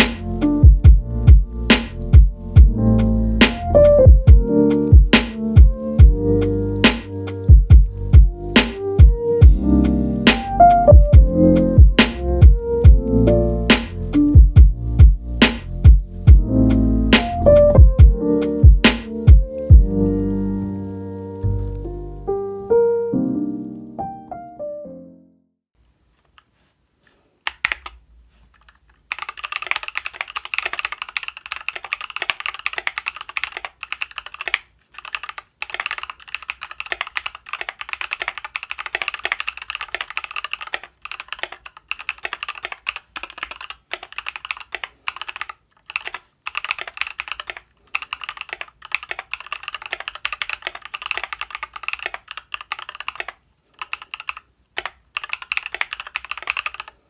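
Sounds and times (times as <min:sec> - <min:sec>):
mechanical keyboard typing: 0:27.5 - 0:57.0.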